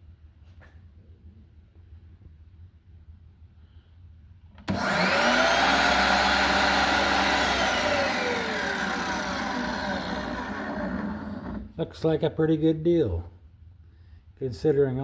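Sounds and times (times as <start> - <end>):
miter saw motor whining: 4.7 - 11.7.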